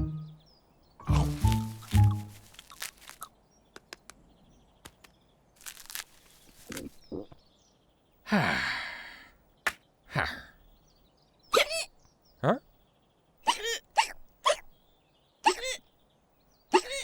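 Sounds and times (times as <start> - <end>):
faint clicks and crackles: 1.7 - 4.2.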